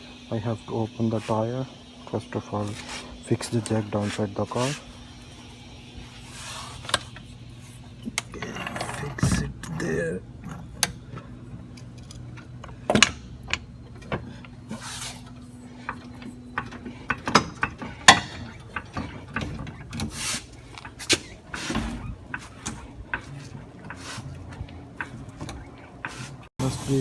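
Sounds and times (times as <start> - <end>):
car jack clicking and clanking: 10.4 - 14.6, 15.8 - 26.2.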